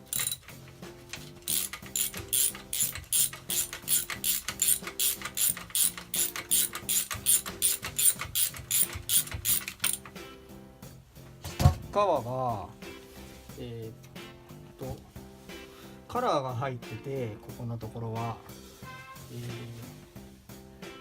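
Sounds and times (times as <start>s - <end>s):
ratchet wrench clicking: 0.0s - 10.2s.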